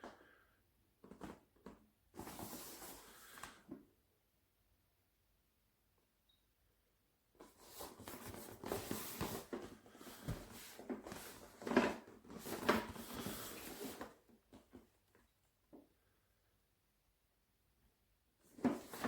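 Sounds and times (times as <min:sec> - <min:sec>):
irregular rustling and scraping: 0:01.0 - 0:03.7, 0:07.4 - 0:14.9, 0:18.5 - 0:19.0.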